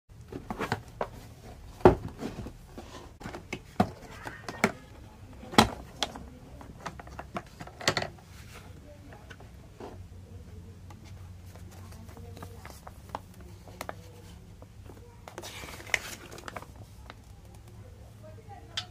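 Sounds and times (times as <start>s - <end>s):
faint low hum: 0.1s - 18.9s
objects knocking and clicking: 3.2s - 8.2s.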